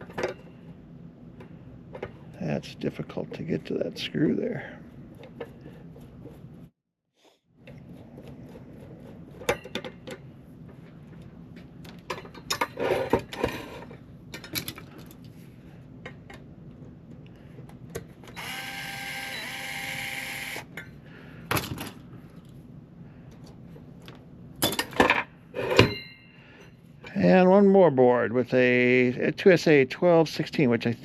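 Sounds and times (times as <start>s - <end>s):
electric screwdriver motor running: 18.4s - 20.7s.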